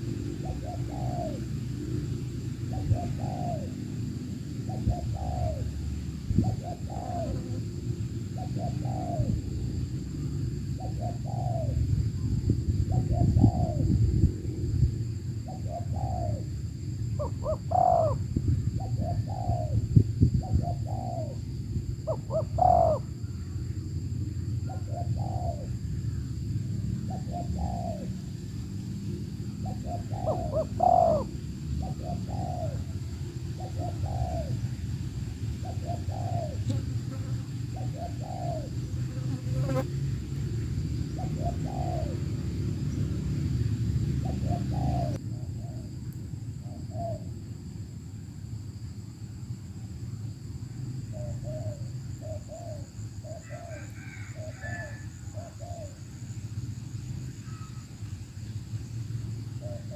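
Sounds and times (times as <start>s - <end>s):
doves cooing: 0.0s - 12.0s, 12.9s - 14.0s, 15.5s - 19.8s, 20.4s - 23.6s, 24.6s - 26.3s, 27.0s - 28.3s, 29.4s - 34.8s, 35.6s - 39.9s, 41.1s - 42.7s, 44.2s - 45.9s, 51.1s - 56.1s
steady low rumble: 0.0s - 36.6s.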